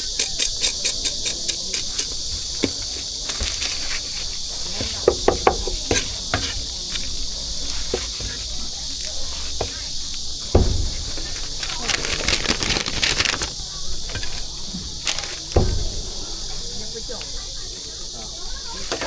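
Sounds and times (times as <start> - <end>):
scattered clicks and knocks: 0.0 - 17.4
insect chorus chirring: 0.0 - 19.0
sharp rhythmic knocks: 4.4 - 13.5.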